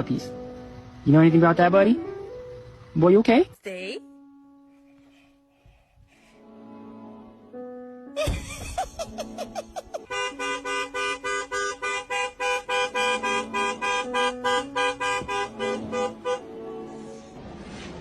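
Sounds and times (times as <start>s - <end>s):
horn-like electronic melody: 6.2s - 8.2s, 10.0s - 17.4s.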